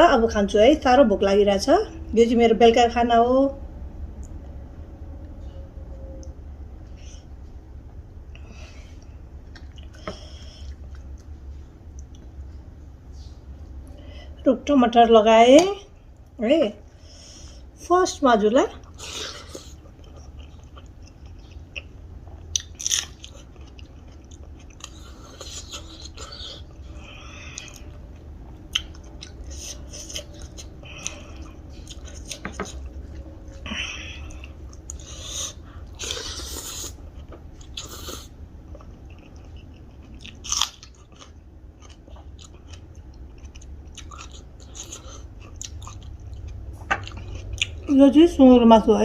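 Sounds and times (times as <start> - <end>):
steady low hum: 0.0 - 49.0
mouth chewing food: 18.8 - 47.9.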